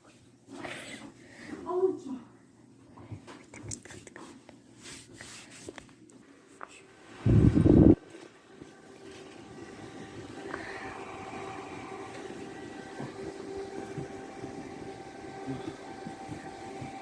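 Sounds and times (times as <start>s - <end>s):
microwave oven humming: 6.8s - 17.0s.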